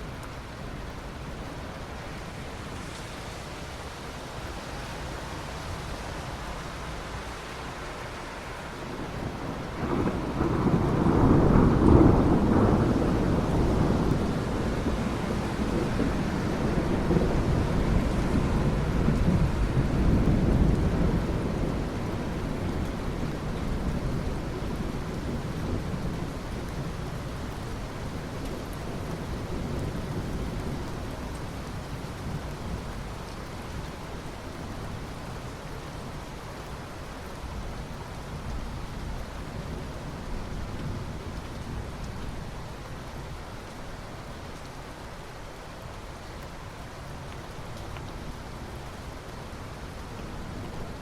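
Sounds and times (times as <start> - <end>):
steady rain: 0.0 - 51.0
thunder rumbling: 8.8 - 26.8.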